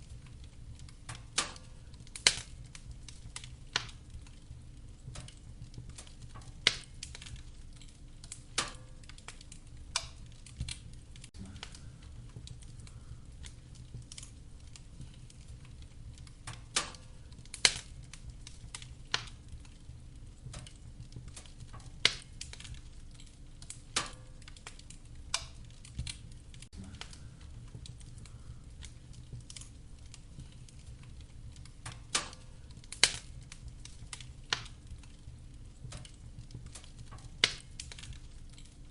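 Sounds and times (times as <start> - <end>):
firewood popping and snapping: 0.0 - 38.9
low rumble of flames: 0.0 - 38.9.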